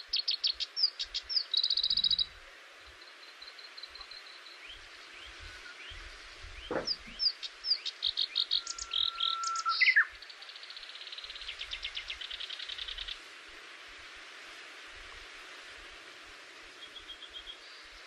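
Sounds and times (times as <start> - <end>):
birds singing: 0.0 - 13.2, 16.8 - 18.0
outdoor hiss: 0.0 - 18.0.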